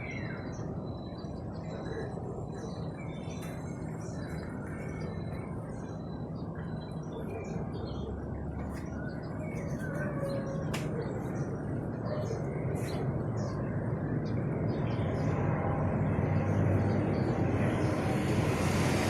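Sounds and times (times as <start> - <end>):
distant aircraft rumble: 1.0 - 19.0.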